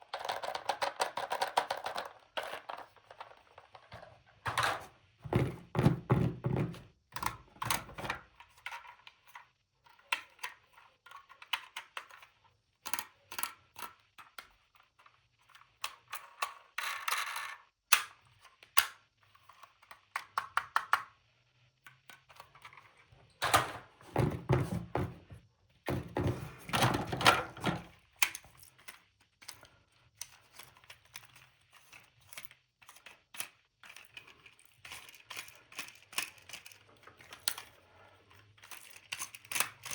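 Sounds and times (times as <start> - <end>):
plastic toy pieces clicking: 0.0 - 3.4, 30.2 - 37.8, 38.6 - 39.9.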